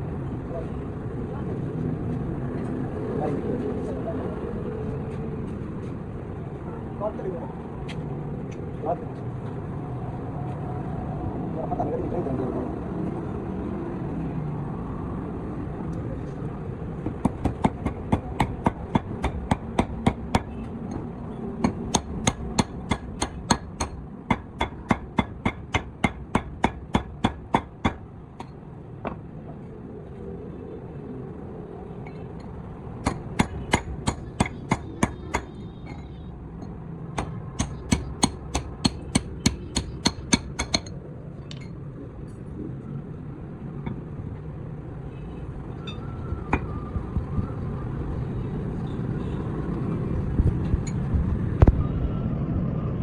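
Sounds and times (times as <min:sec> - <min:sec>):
hammer striking metal: 0:17.2 - 0:20.6, 0:21.6 - 0:28.6, 0:33.0 - 0:36.1, 0:37.2 - 0:41.0.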